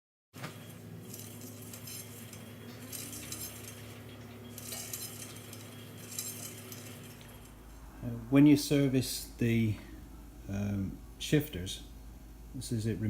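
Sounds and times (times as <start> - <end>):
steady low hum: 0.4 - 13.0
small metal parts clinking: 0.7 - 7.6.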